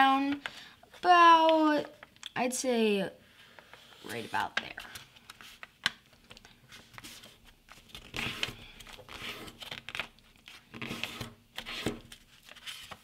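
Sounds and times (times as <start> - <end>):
paper rustling and crinkling: 3.9 - 13.0.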